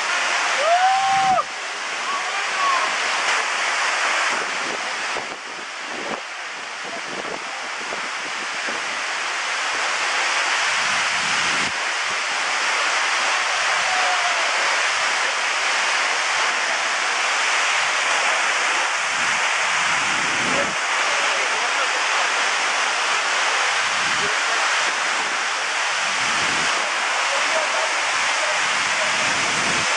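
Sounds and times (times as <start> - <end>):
waterfall rushing: 0.0 - 29.9
wind rumble on microphone: 4.2 - 9.4, 10.6 - 12.3, 17.8 - 21.0, 23.8 - 27.1, 27.9 - 29.9.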